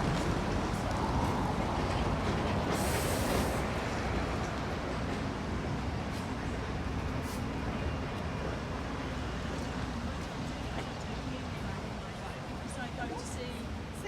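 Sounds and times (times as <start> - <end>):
rumble of traffic: 0.0 - 14.0.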